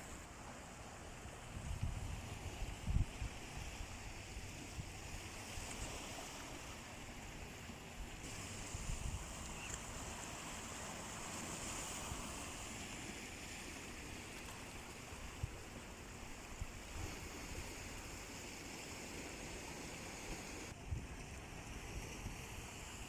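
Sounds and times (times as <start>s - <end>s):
sea surf washing on shore: 0.0s - 23.0s.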